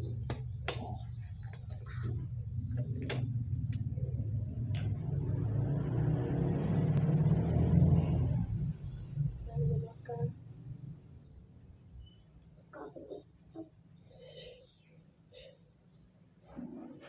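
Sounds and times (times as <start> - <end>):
clicks and knocks: 0.2 - 2.0, 2.7 - 3.9.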